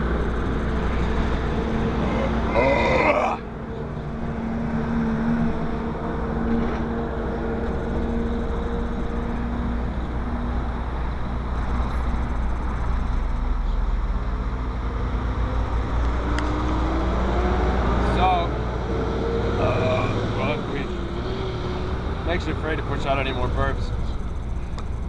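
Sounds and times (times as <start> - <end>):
low hum: 0.0 - 25.0
car cabin road rumble: 5.4 - 15.0, 19.6 - 25.0.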